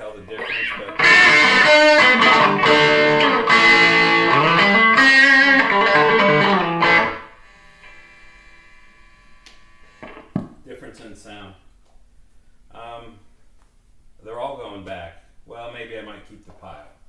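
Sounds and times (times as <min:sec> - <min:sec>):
amplifier hum and buzz: 0:00.1 - 0:10.5
distorted electric guitar: 0:00.2 - 0:07.3, 0:10.0 - 0:10.3.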